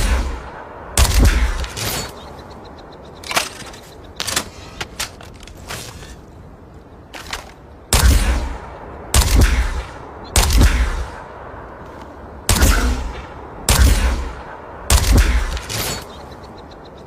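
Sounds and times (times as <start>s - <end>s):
sci-fi weapon firing blasts: 0.0s - 2.2s, 7.9s - 11.3s, 12.5s - 16.2s.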